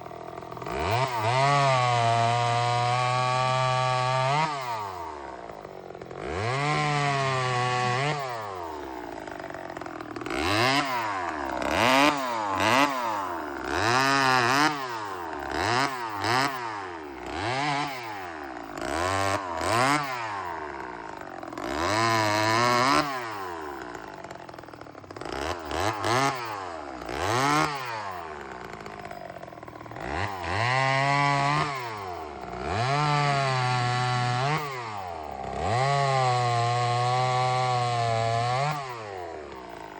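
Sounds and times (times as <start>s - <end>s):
chainsaw engine revving: 0.0s - 39.9s.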